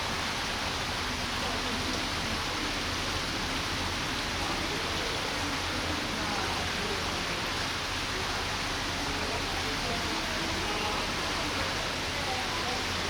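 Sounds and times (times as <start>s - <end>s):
faint indistinct voices: 0.7s - 13.0s.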